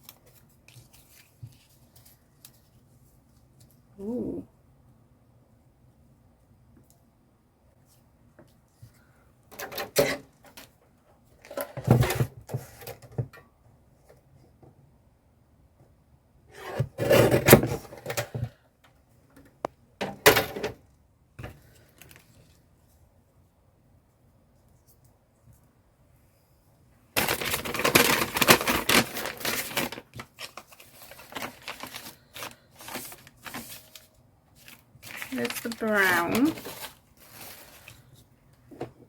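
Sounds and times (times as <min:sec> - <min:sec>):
craft materials rustling and knocking: 0:27.2 - 0:39.0.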